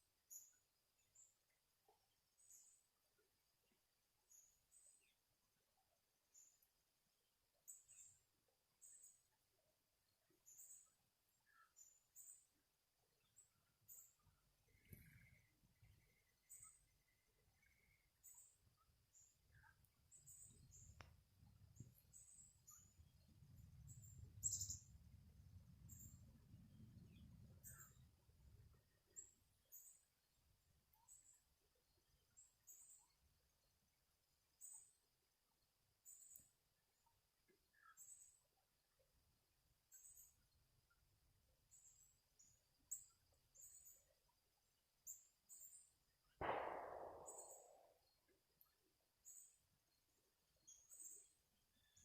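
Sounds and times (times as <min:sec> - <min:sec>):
small birds chirping: 0:00.0 - 0:09.4, 0:10.0 - 0:52.0
sharp click: 0:46.4 - 0:47.7.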